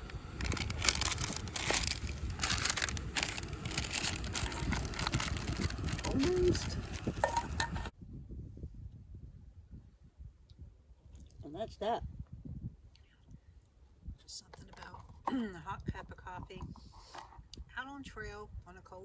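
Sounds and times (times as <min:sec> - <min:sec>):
crinkling handling noise: 0:00.0 - 0:07.9
wind buffeting microphone: 0:00.0 - 0:19.0.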